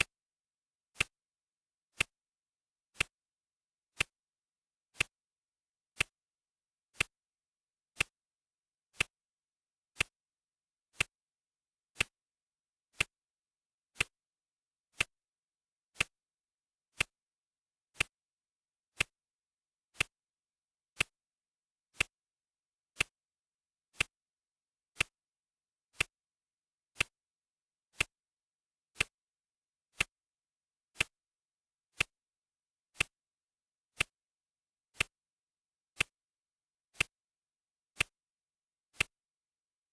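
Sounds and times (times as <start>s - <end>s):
clock ticking: 24.0s - 24.2s.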